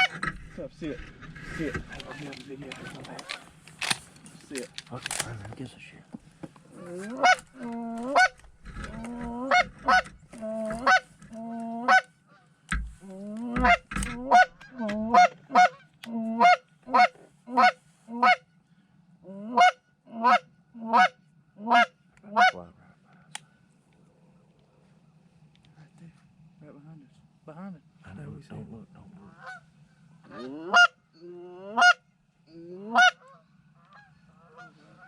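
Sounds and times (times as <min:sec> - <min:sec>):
goose honking: 0:00.0 - 0:00.4, 0:06.7 - 0:18.4, 0:19.4 - 0:22.7, 0:29.3 - 0:31.0, 0:31.7 - 0:32.0, 0:32.8 - 0:35.0.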